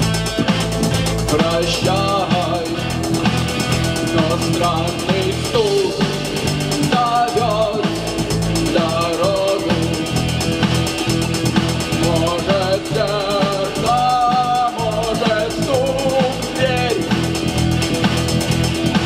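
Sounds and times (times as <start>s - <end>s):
drum kit beat and bass: 0.0s - 19.0s
rock band instrumental: 0.0s - 19.0s.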